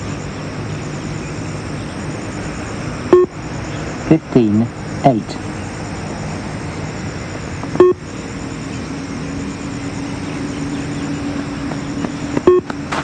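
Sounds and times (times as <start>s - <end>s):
steady low hum: 0.0s - 13.0s
short electronic beep: 3.1s - 3.3s, 7.8s - 8.0s, 12.4s - 12.7s.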